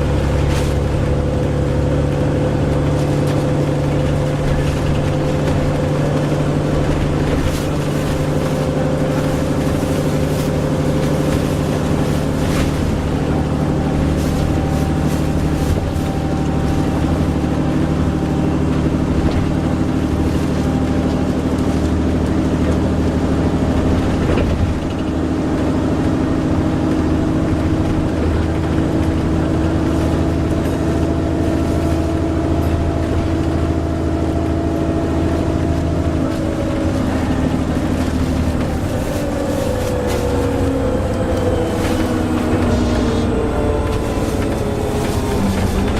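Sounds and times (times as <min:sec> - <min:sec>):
bus engine and road rumble: 0:00.0 - 0:45.9
steady droning held tones: 0:40.3 - 0:45.9.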